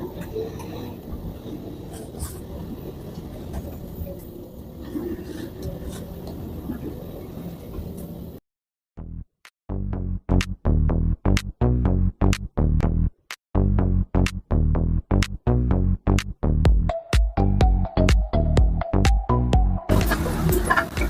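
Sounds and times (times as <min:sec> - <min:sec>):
electronic music: 0:09.0 - 0:21.0
vehicle engine and road noise: 0:19.9 - 0:21.0.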